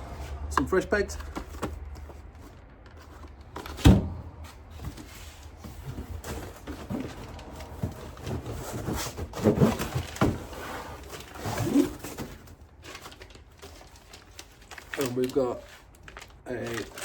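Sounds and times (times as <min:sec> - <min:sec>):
packaging rustling: 0:05.8 - 0:17.0.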